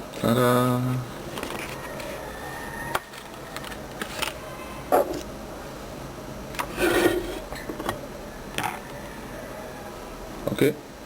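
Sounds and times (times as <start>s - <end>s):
short scraping rub: 6.7s - 7.6s.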